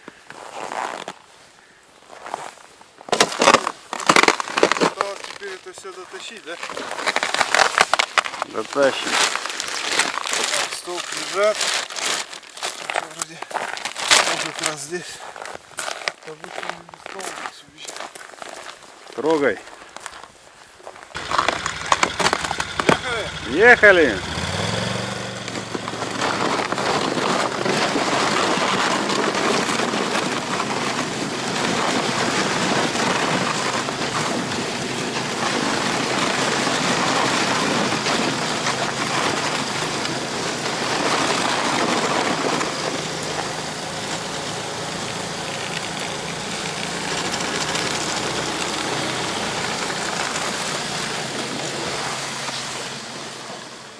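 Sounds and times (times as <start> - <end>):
vehicle engine running: 21.2 - 53.9.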